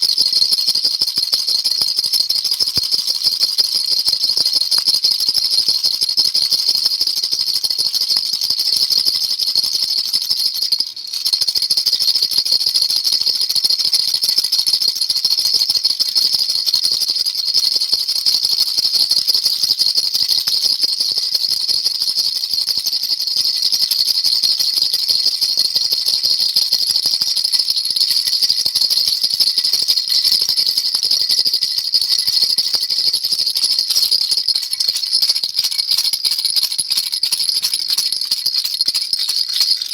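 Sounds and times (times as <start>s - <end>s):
baby rattle shaken fast: 29.1s - 39.9s.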